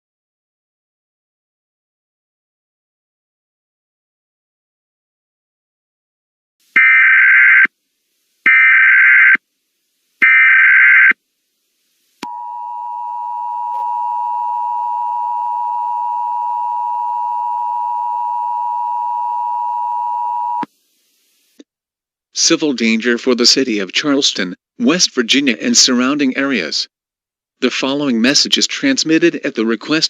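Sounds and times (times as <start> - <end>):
harsh two-tone attention signal: 12.2 - 20.7.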